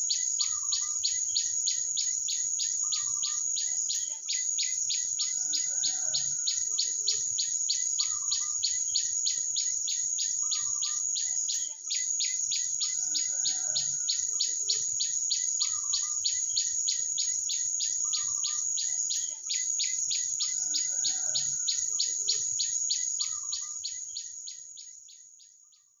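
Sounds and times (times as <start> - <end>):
bird calls: 7.9 - 24.3.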